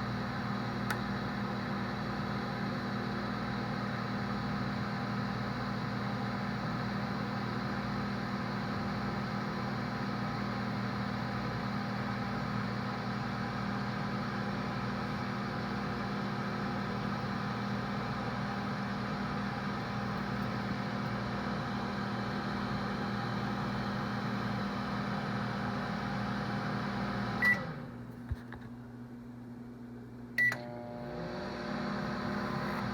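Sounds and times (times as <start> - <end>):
microwave oven humming: 0.0 - 32.9.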